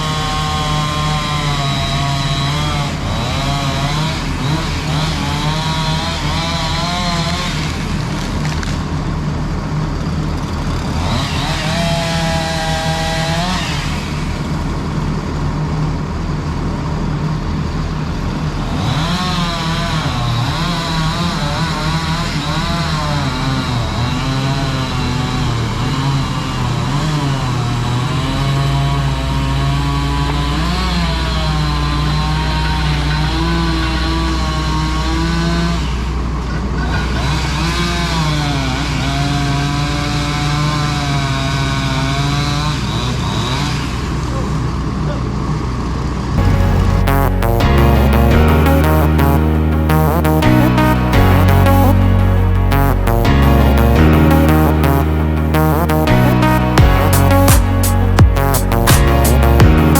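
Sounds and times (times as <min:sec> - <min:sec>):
chainsaw revving: 0:00.0 - 0:08.8, 0:10.4 - 0:15.0, 0:18.4 - 0:44.4
deep rumble: 0:46.4 - 0:59.9.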